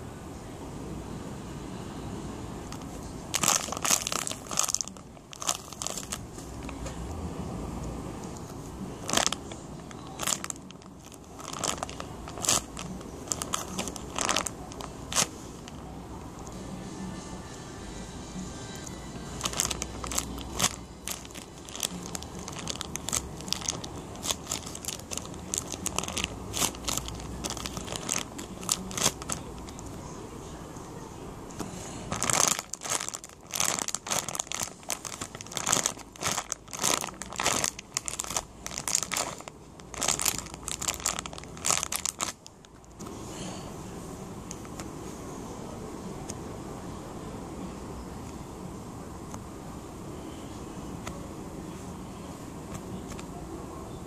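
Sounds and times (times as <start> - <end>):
plastic wrapping crinkling: 2.7 - 6.7, 9.0 - 15.8, 19.4 - 29.9, 32.1 - 43.0.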